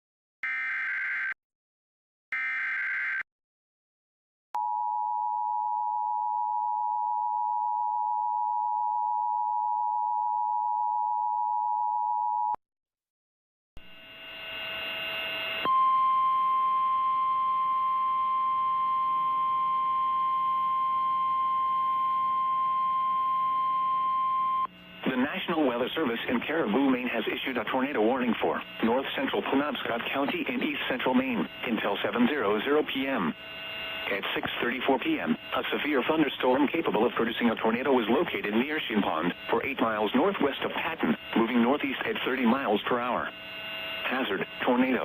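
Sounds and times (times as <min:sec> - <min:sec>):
steady alarm tone: 0:00.4 - 0:01.4, 0:02.4 - 0:03.3, 0:13.8 - 0:45.0
two-tone attention signal: 0:15.6 - 0:24.7
radio static: 0:24.7 - 0:45.0.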